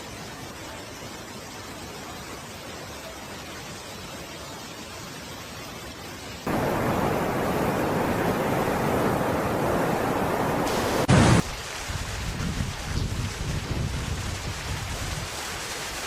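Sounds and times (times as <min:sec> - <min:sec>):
rushing floodwater: 0:06.5 - 0:16.0.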